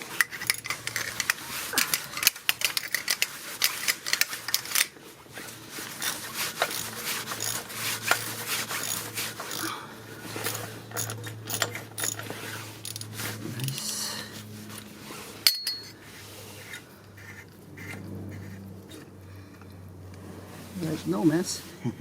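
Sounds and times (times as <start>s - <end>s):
metal parts clinking: 0.0s - 5.0s, 10.3s - 14.0s, 15.4s - 16.0s
hand tool clicking and rattling: 0.0s - 9.7s, 10.3s - 13.9s, 15.4s - 16.0s.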